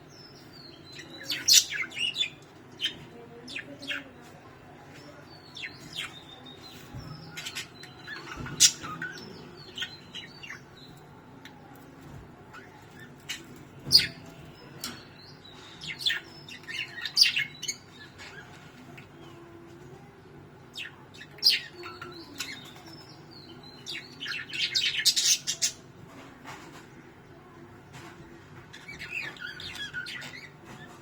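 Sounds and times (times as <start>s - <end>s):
small birds chirping: 0.0s - 31.0s.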